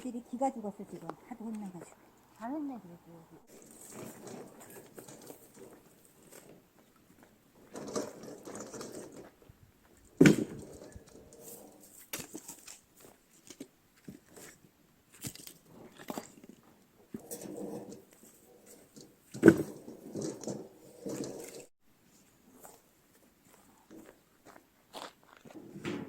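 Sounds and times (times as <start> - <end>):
wood pieces knocking and shuffling: 3.5 - 9.4
axe splitting firewood: 10.2 - 14.6, 15.2 - 21.7.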